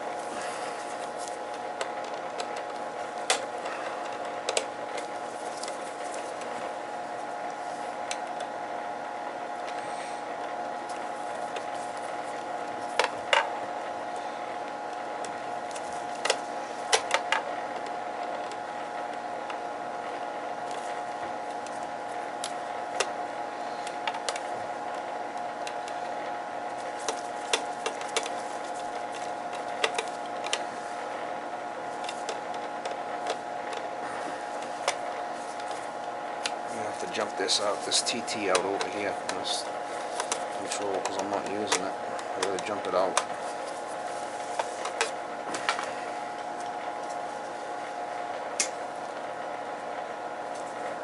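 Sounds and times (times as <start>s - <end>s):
steady hum: 0.0s - 51.0s.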